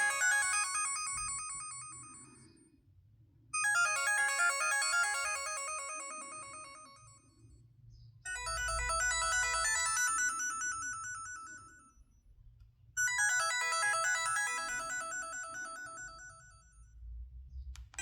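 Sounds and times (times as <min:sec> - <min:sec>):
mobile phone ringtone melody: 0:00.0 - 0:02.4, 0:03.6 - 0:07.3, 0:08.3 - 0:12.0, 0:13.0 - 0:16.8.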